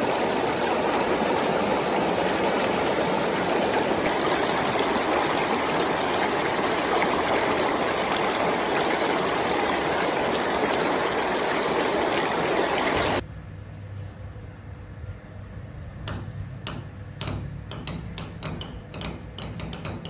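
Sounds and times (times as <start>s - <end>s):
running water: 0.0s - 13.2s.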